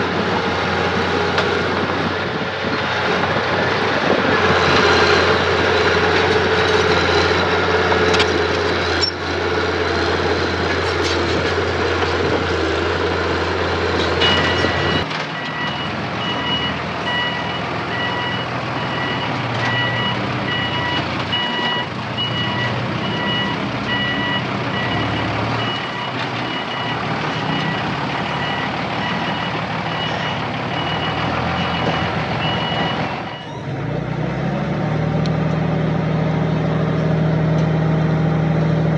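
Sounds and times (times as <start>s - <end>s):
heavy machine engine running: 0.0s - 38.9s
reversing alarm beeping: 14.2s - 33.6s.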